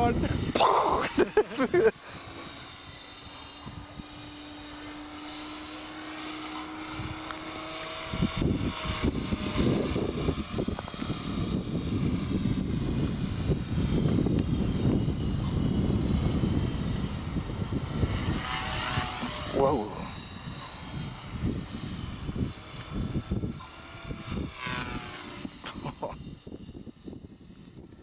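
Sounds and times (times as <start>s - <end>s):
rc helicopter rotor whine: 0.0s - 28.0s.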